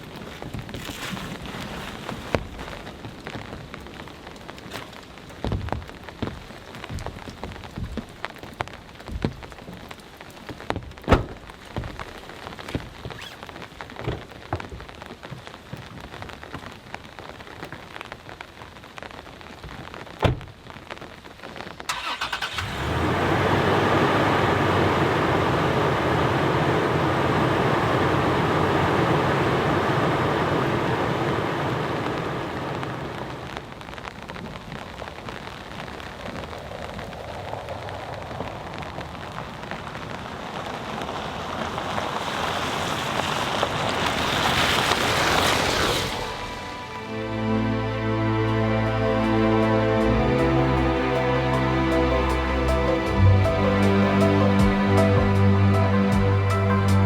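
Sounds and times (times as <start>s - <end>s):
raindrops tapping on tent fabric: 0.0s - 22.2s, 24.2s - 47.0s
heavy rain rushing: 0.0s - 57.0s.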